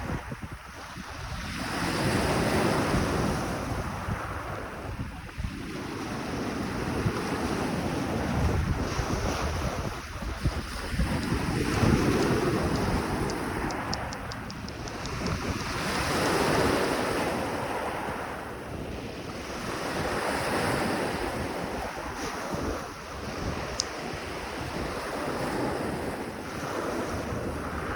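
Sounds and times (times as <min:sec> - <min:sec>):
wind rumbling on microphone: 0:00.0 - 0:27.9
sea waves washing in: 0:05.6 - 0:27.9
sharp click: 0:12.0 - 0:15.8.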